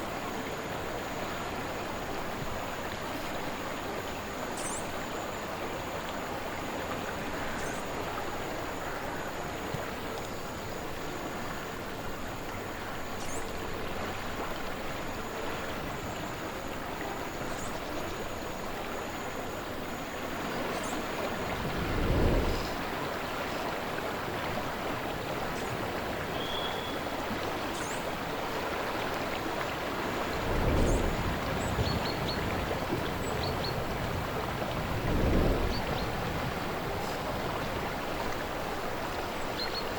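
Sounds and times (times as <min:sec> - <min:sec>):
river water flowing: 0:00.0 - 0:39.9
wind rumbling: 0:20.3 - 0:26.3, 0:29.4 - 0:39.2.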